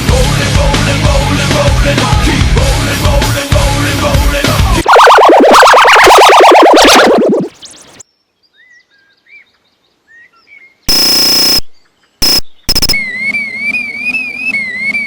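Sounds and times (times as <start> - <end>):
loud distorted music: 0.0 - 7.5
harsh electronic beep: 4.8 - 7.9, 10.9 - 13.1
warbling whistle-like tone: 4.8 - 8.0.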